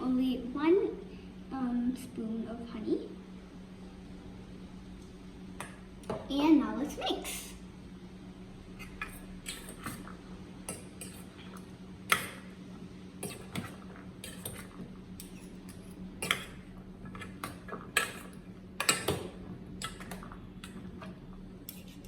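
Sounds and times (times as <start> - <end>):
spoon clinking and scraping bowl: 8.8 - 10.0, 13.2 - 19.2, 21.6 - 22.0.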